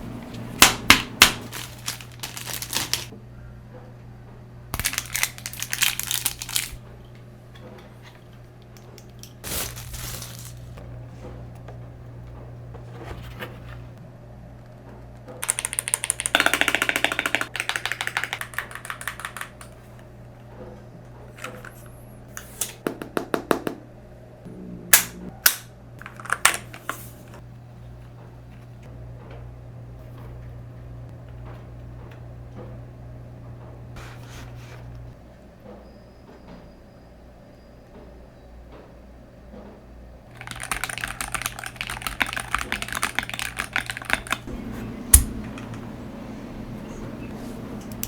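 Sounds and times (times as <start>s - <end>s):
rapid keyboard typing: 15.4s - 19.9s, 40.3s - 44.5s.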